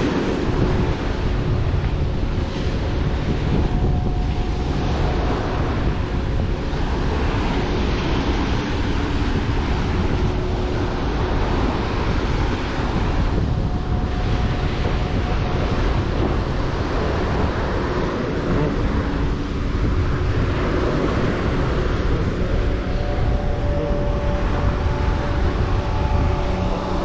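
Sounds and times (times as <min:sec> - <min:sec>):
faint steady hum: 0:00.0 - 0:27.0
surf washing onto beach: 0:00.0 - 0:27.0
wind buffeting microphone: 0:00.0 - 0:27.0.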